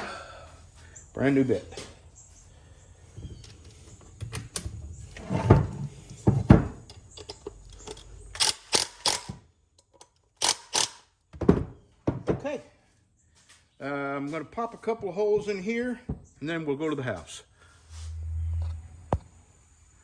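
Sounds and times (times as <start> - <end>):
drill bit clicks and knocks: 6.9 - 11.0.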